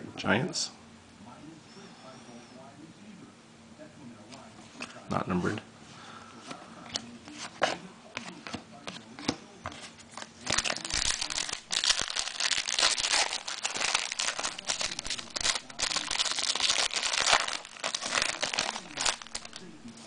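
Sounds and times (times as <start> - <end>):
plastic wrapping crinkling: 10.2 - 20.0.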